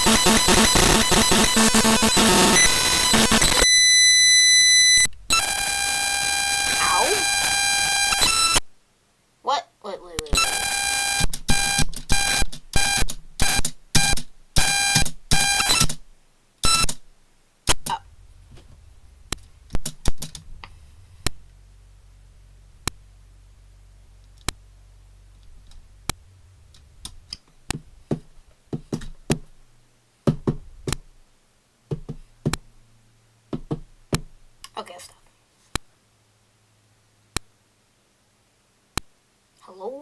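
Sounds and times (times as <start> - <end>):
chopped electronic beeps: 0.0 - 8.6
low electronic hum: 0.0 - 9.0, 17.0 - 31.5
sharp clicks and blips: 10.2 - 16.0, 16.6 - 17.0, 18.7 - 21.6, 24.2 - 24.7.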